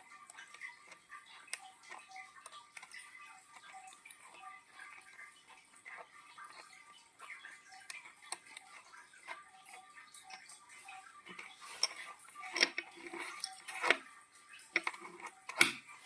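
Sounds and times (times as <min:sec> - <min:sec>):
light metallic clicks and clinks: 0:11.3 - 0:14.0.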